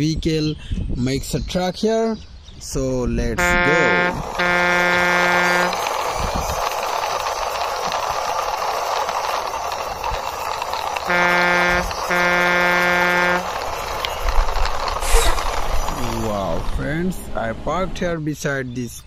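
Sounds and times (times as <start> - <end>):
toy electronic horn honking: 3.4 - 6.6, 11.0 - 14.4
toy wheels rolling rumble: 3.7 - 17.0.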